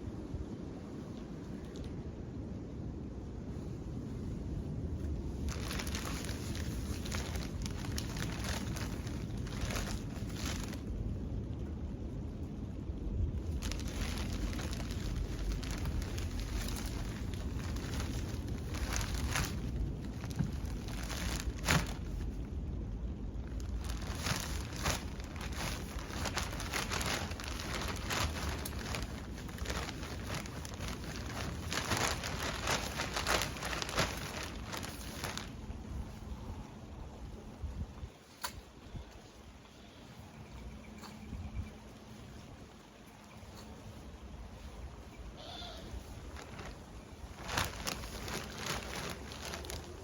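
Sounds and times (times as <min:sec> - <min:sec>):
wind rumble on microphone: 0:00.0 - 0:50.0
soil scraping and crunching: 0:05.4 - 0:11.0, 0:13.4 - 0:22.4, 0:23.4 - 0:35.7, 0:46.2 - 0:50.0.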